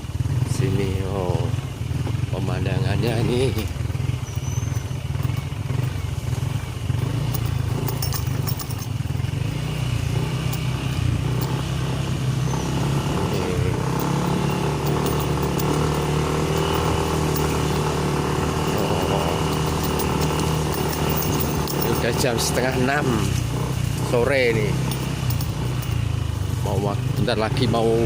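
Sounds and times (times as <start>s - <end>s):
motorcycle engine running: 0.0s - 28.0s
clicks and rattles: 7.0s - 11.6s, 13.7s - 22.8s, 24.8s - 26.0s.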